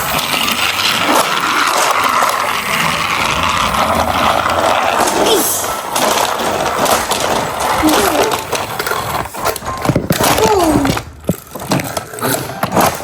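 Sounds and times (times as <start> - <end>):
plastic toy trains clattering: 0.0 - 13.0
child making gliding sounds: 4.6 - 5.9, 7.6 - 8.5, 10.3 - 11.1.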